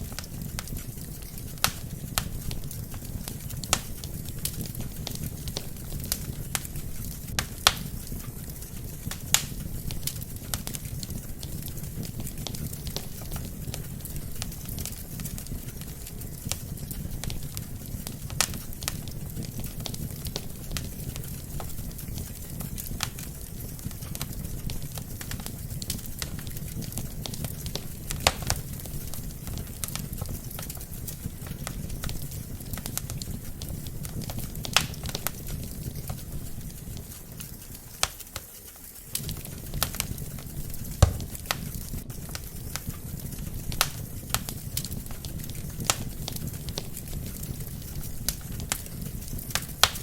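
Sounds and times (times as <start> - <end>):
logs crackling and popping: 0.0 - 50.0
low rumble of flames: 0.0 - 50.0
low thud: 41.0 - 41.5.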